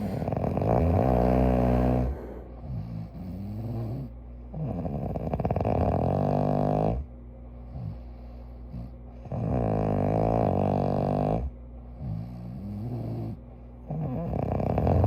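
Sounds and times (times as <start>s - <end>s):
soft breathing: 0.0s - 5.0s, 7.4s - 9.3s
person snoring: 0.0s - 7.0s, 8.7s - 15.0s.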